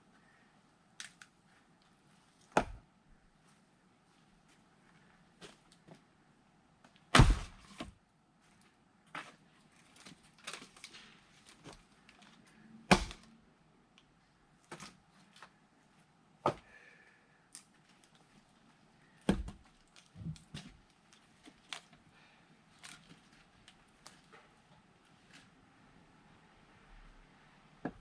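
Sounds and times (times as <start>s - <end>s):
axe splitting firewood: 2.5s - 2.8s, 7.1s - 7.9s, 12.9s - 13.3s, 19.2s - 19.6s.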